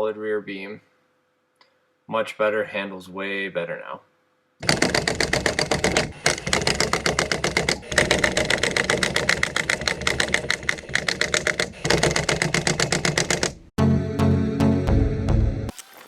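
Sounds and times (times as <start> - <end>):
impact wrench hammering: 4.6 - 13.7.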